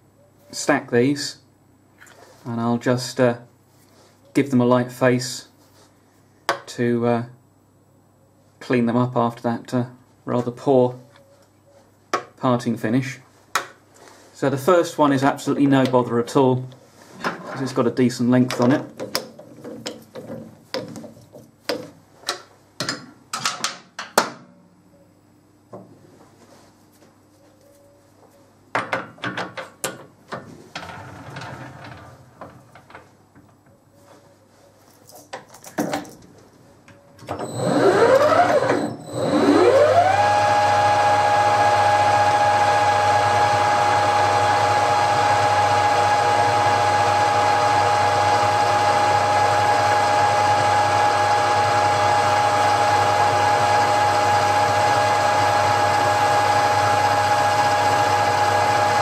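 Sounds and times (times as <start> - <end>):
lathe motor whine: 37.3 - 59.0.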